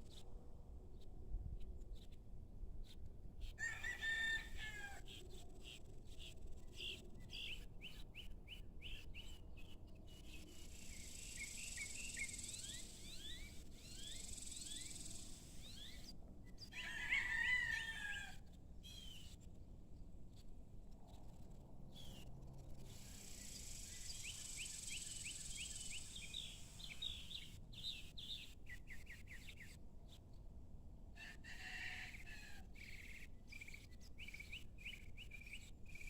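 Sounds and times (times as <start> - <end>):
rooster crowing: 3.6 - 5.0, 16.7 - 18.4, 31.2 - 32.7
small birds chirping: 8.9 - 16.1, 22.0 - 29.8, 32.8 - 36.0
high insect hiss: 23.0 - 26.7.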